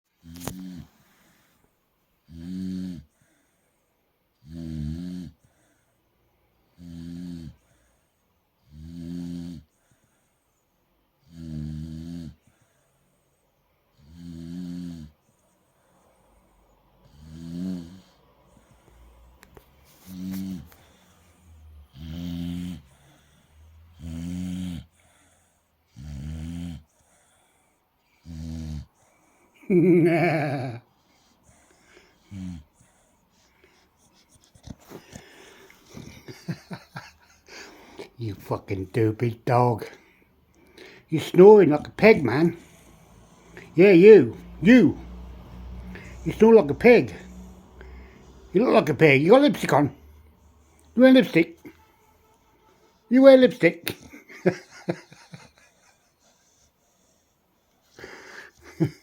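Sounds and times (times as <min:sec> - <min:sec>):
dog snoring: 0:00.2 - 0:01.5, 0:02.2 - 0:03.4, 0:04.4 - 0:05.8, 0:06.7 - 0:07.9, 0:08.6 - 0:10.0, 0:11.2 - 0:12.8, 0:13.9 - 0:15.4, 0:16.1 - 0:19.4, 0:20.0 - 0:40.1, 0:40.8 - 0:51.7.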